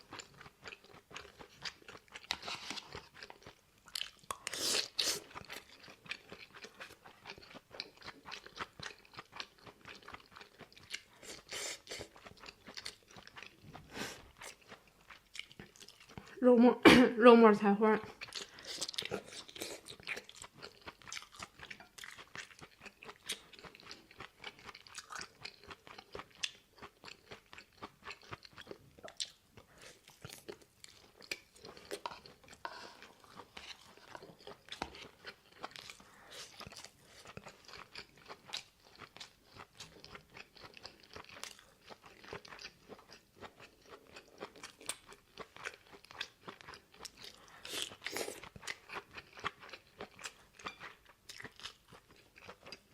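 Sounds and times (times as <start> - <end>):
person chewing crunchy food: 0.0 - 16.4, 18.1 - 52.9.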